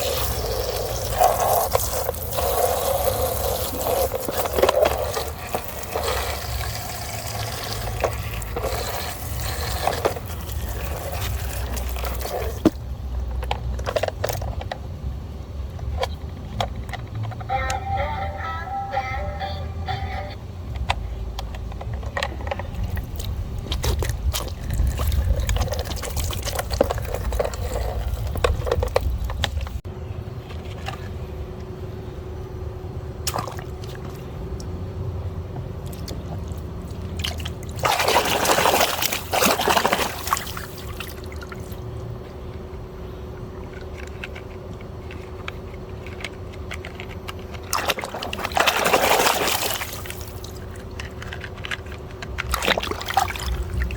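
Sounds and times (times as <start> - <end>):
water pouring and splashing: 0.0 - 12.8, 22.8 - 29.8, 35.8 - 41.8, 47.7 - 50.9, 52.4 - 53.9.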